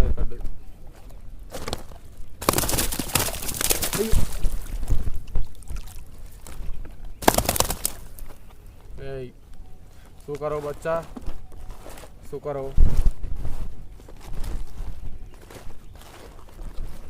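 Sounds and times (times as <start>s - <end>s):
water splashing and sloshing: 2.5s - 6.6s.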